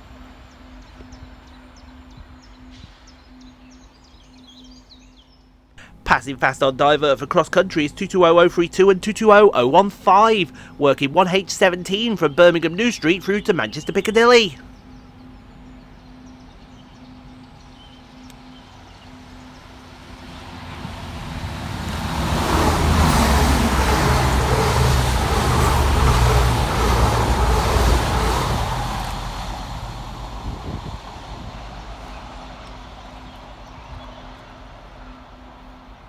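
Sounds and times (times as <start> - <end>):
diesel trains passing fast: 5.8 - 36.0.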